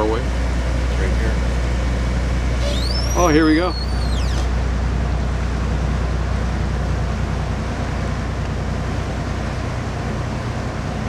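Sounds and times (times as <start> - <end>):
boat engine drone: 0.0 - 11.0
water rushing: 1.4 - 4.8.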